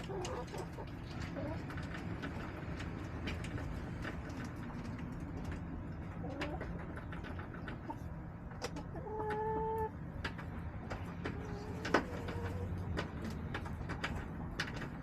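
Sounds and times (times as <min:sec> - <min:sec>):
hens calling: 0:07.7 - 0:10.0.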